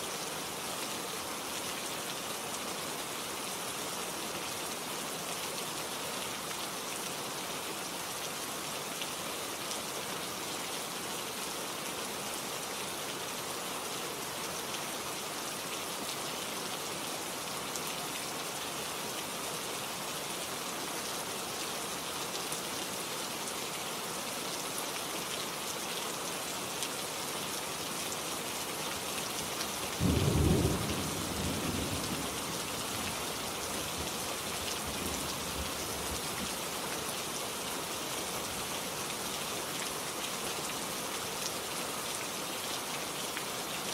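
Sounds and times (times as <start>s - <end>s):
steady rain falling: 0.0s - 43.9s
low rumble of thunder: 30.0s - 32.5s.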